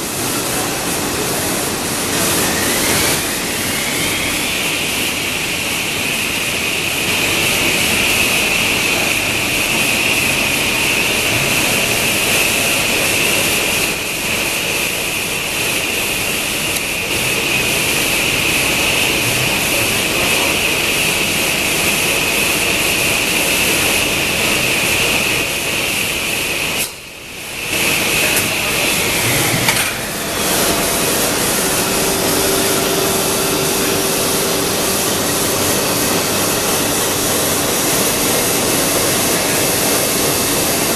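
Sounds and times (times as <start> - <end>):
router spindle whine: 0.0 - 14.8, 27.6 - 40.9.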